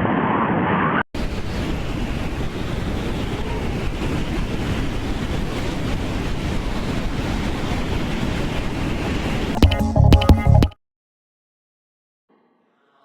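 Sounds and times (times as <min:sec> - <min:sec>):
strong wind buffeting microphone: 0:01.2 - 0:09.6.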